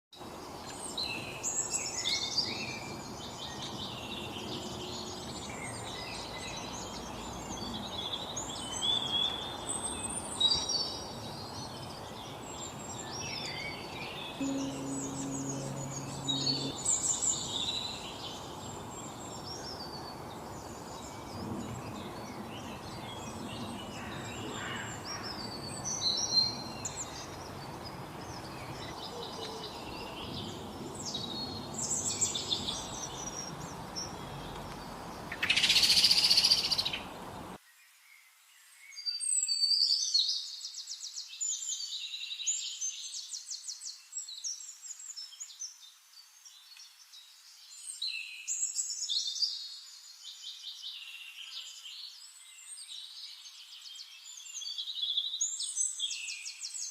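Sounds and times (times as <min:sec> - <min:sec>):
background hiss: 0:00.2 - 0:56.9
songbirds chirping and singing: 0:00.4 - 0:37.6
rapid trilling birdsong: 0:00.7 - 0:37.6
loud harsh buzzing bird call: 0:14.4 - 0:18.1.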